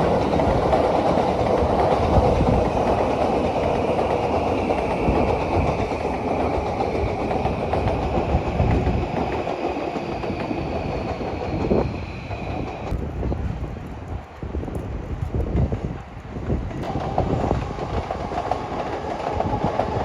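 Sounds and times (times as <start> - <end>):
wheels clattering over rail joints: 0.0 - 11.7
electric train rumbling: 0.0 - 20.0.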